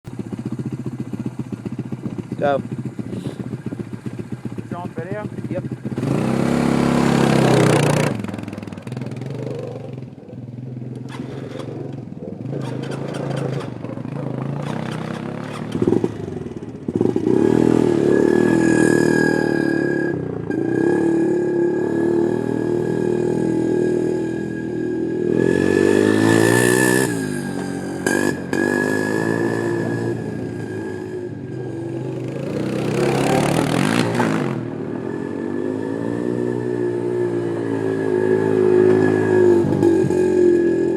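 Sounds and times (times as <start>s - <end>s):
atv engine revving: 0.1s - 40.9s.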